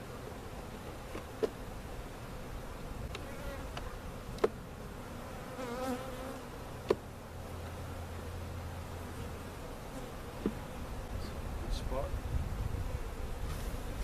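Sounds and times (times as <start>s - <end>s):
bee droning close by: 0.0s - 14.0s
bees buzzing: 0.0s - 14.0s.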